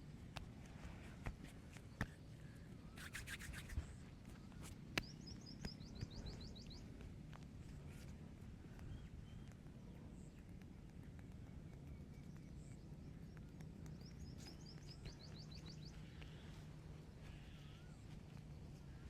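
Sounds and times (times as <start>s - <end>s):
faint low background noise: 0.0s - 19.0s
light clicks and taps: 0.1s - 2.8s, 3.7s - 17.4s
bird chirping: 1.7s - 7.0s, 8.7s - 19.0s.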